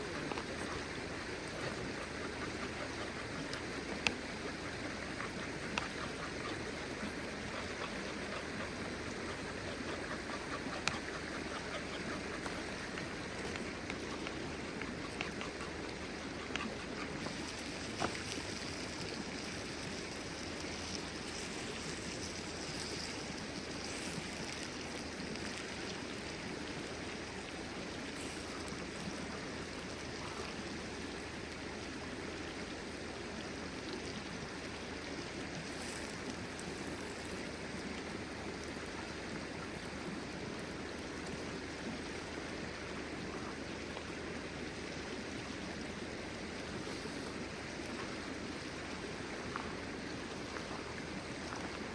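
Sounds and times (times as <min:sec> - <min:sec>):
stream flowing: 0:00.0 - 0:51.9
faint clicks: 0:01.6 - 0:22.9.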